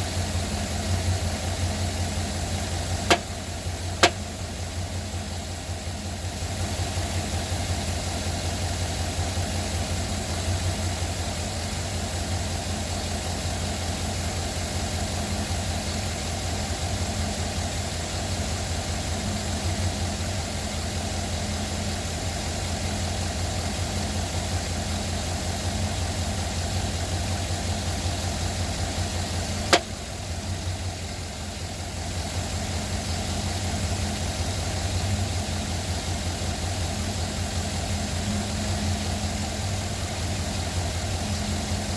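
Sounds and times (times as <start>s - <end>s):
engine idling with knocking: 0.0s - 41.9s
sharp click: 3.1s - 3.3s.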